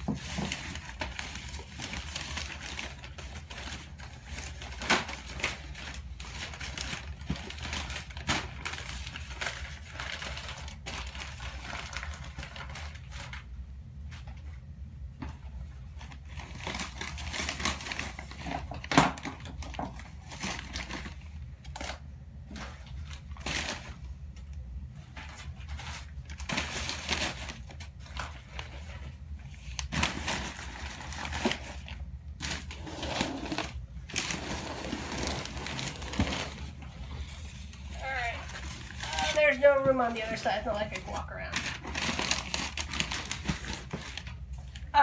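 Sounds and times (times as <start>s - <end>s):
packing material crinkling: 0.0s - 14.6s, 15.7s - 45.0s.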